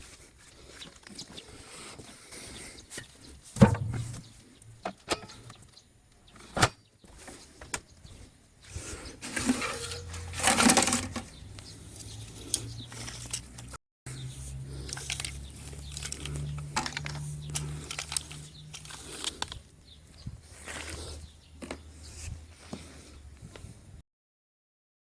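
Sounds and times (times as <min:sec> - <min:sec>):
handling clicks and rustling: 0:09.2 - 0:13.8, 0:14.8 - 0:20.0.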